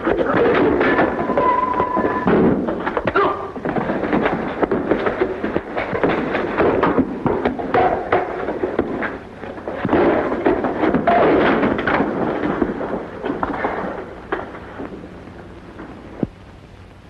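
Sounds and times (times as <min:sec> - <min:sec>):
fistfight thuds and crashes: 0:00.0 - 0:14.1.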